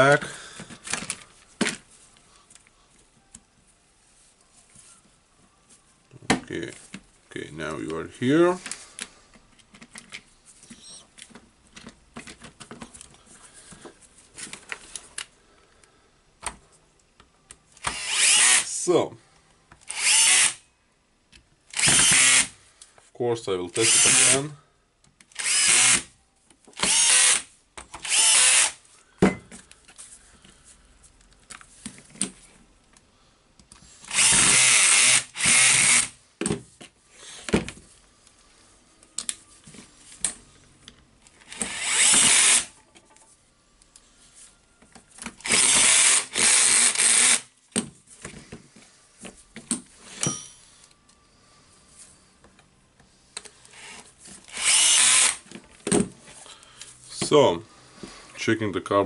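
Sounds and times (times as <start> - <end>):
cordless drill motor bursts: 17.8 - 18.7, 19.9 - 20.6, 21.7 - 22.6, 23.8 - 24.4, 25.3 - 26.1, 26.8 - 28.8, 34.1 - 36.2, 41.5 - 42.7, 45.4 - 47.5, 53.7 - 55.4.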